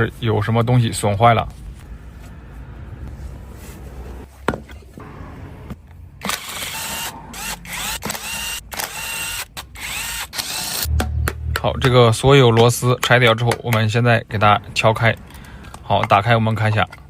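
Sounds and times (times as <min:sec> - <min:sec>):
power driver whining: 0:06.2 - 0:10.9
low hum: 0:10.7 - 0:12.4.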